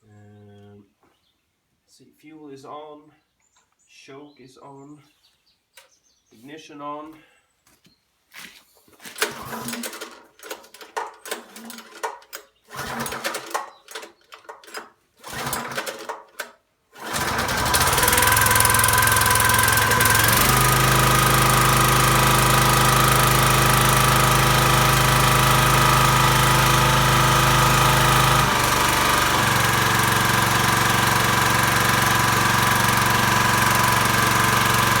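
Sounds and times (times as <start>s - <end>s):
small engine cranking: 9.0s - 35.0s
small engine running: 9.1s - 16.2s, 17.0s - 35.0s.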